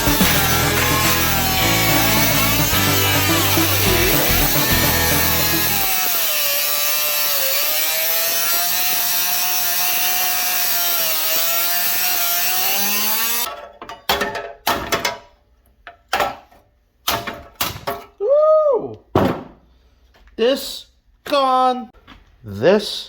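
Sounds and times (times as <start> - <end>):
power tool cutting steel: 0.0 - 13.5
metal clunks and knocks: 13.5 - 15.3.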